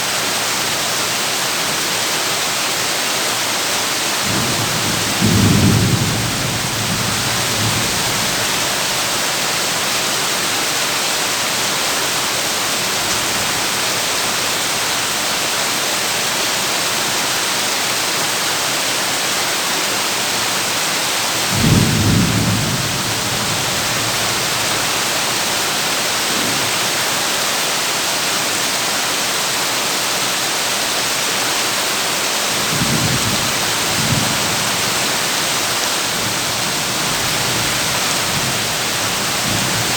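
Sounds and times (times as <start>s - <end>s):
heavy rain on a tin roof: 0.0s - 39.9s
thunder rumbles: 4.2s - 9.3s, 21.5s - 27.0s.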